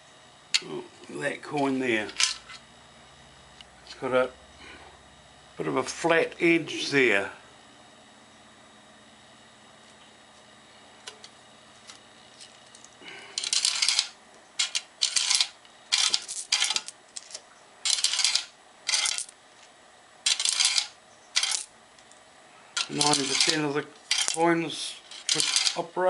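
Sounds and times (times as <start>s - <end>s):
coins clattering down metal slide: 13.4s - 19.3s, 20.2s - 21.7s, 22.8s - 24.4s, 25.0s - 25.9s.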